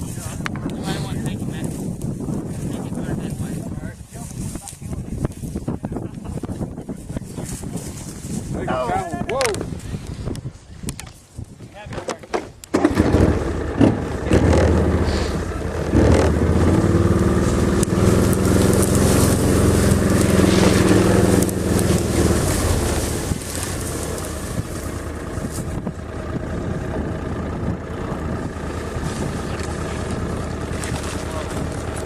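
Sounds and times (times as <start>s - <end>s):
motor engine running: 12.7s - 32.0s.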